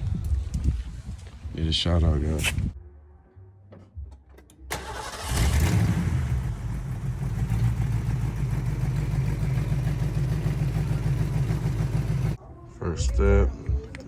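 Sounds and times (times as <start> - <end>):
car engine cranking and idling: 4.6 - 12.4.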